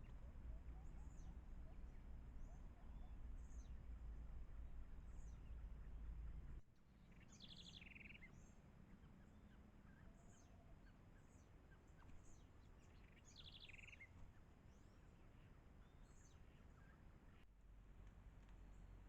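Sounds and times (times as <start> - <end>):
low rumble: 0.0 - 6.6
faint birdsong: 0.0 - 19.0.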